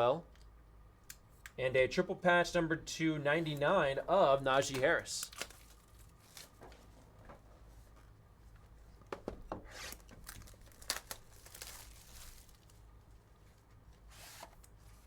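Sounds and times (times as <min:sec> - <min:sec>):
packaging crinkling and tearing: 0:04.6 - 0:06.8, 0:09.9 - 0:12.8
cards rustling and clicking: 0:04.6 - 0:06.9.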